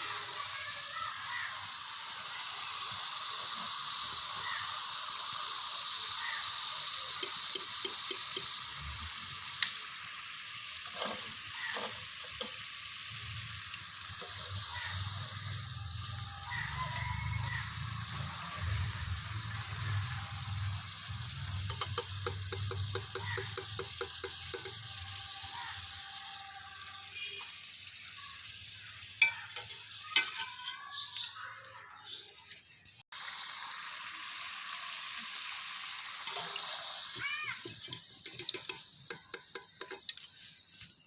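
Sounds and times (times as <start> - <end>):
fries sizzling in oil: 0.0 - 41.0
utensil tapping pan: 7.2 - 8.6, 21.6 - 24.8, 37.6 - 40.2.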